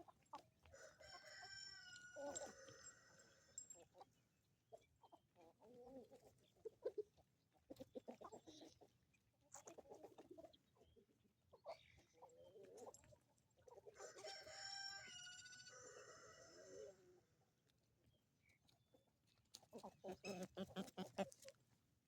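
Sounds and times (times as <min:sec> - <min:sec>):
chickens clucking softly: 0:00.0 - 0:21.8
rooster crowing: 0:00.8 - 0:03.3, 0:14.0 - 0:17.0.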